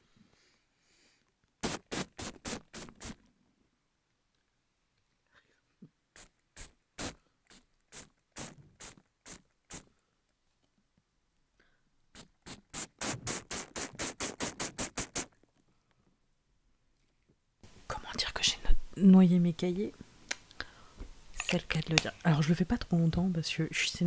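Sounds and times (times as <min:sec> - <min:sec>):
spray bottle spritzing water: 0:01.6 - 0:03.2, 0:06.2 - 0:09.9, 0:12.2 - 0:15.4.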